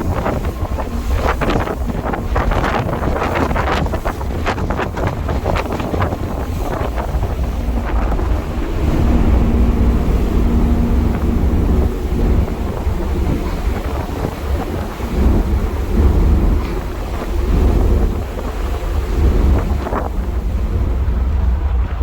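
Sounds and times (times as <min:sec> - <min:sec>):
deep steady rumble: 0:00.0 - 0:22.0
wind buffeting the microphone: 0:00.0 - 0:22.0
faint steady hum: 0:06.8 - 0:22.0.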